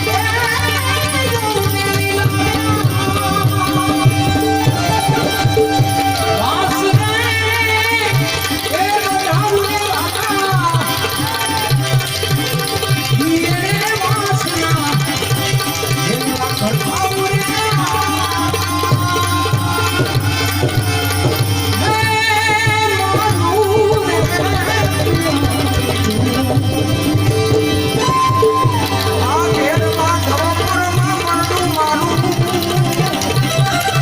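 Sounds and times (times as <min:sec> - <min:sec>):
wavering melody line: 0:00.0 - 0:09.3
tabla rhythm: 0:00.0 - 0:34.0.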